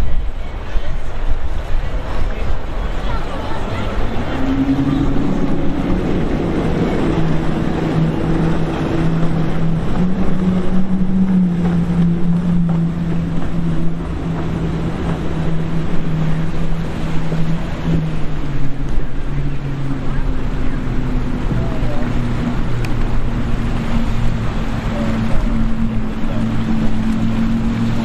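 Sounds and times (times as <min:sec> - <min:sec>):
motorboat engine humming: 0:00.0 - 0:28.0
waves washing: 0:00.0 - 0:28.0
wind on microphone: 0:00.0 - 0:28.0.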